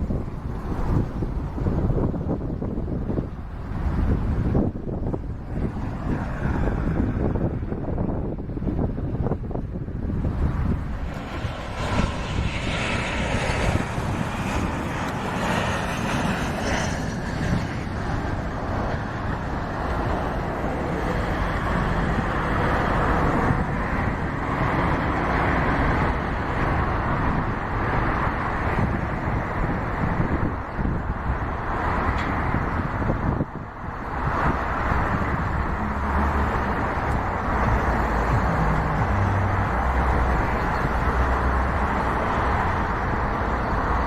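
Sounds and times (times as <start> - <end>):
jet engines rushing: 0.0 - 44.0
faint engine whine: 9.7 - 28.1.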